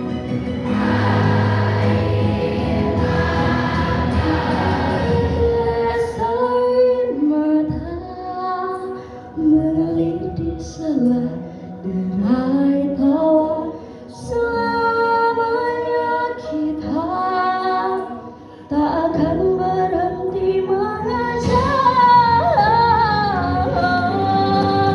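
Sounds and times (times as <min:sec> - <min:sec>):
backing music: 0:00.0 - 0:08.2, 0:09.0 - 0:15.6, 0:18.9 - 0:24.9
woman singing: 0:05.2 - 0:24.9.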